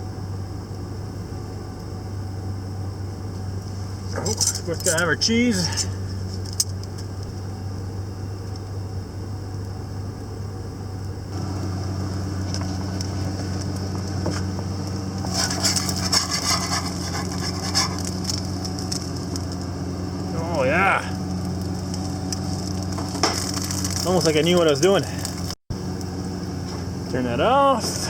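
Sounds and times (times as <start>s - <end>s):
car engine idling: 0.0s - 28.0s
frying pan sizzling and scraping: 11.4s - 20.3s, 21.2s - 25.6s.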